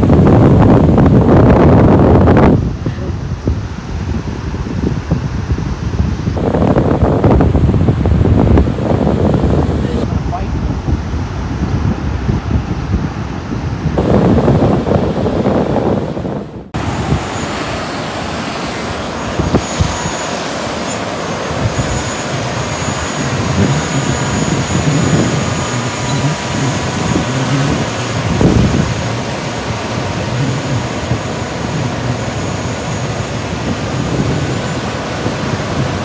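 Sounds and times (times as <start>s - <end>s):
strong wind buffeting microphone: 0.0s - 36.0s
surf: 6.4s - 10.5s, 14.0s - 36.0s.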